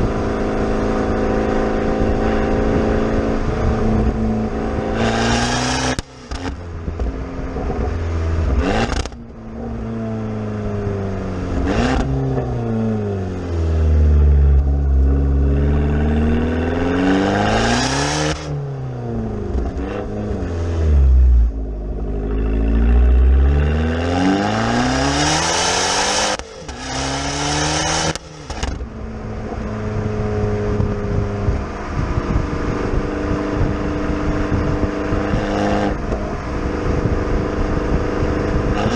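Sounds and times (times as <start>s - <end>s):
car engine revving: 0.0s - 38.9s
exhaust cracks: 27.8s - 38.9s.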